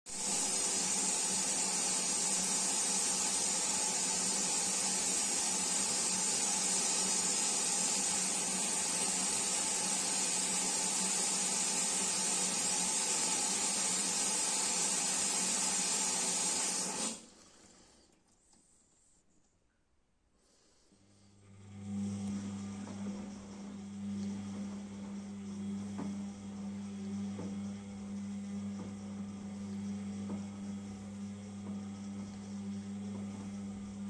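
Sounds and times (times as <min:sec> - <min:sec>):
water spraying into washing machine: 0:00.1 - 0:17.3.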